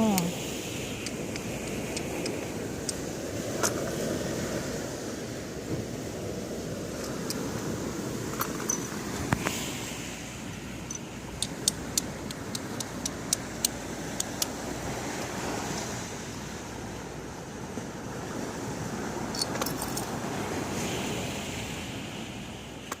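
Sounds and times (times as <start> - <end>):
seaside wind and surf: 0.0 - 23.0
sharp light clicks: 1.0 - 3.0, 10.9 - 14.5.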